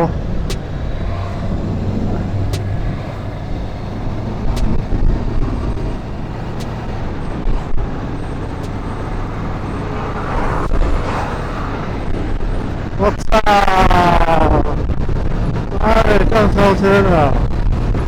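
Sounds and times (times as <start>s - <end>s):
motorcycle engine running: 0.0s - 13.0s
wind rushing over microphone: 0.0s - 18.0s.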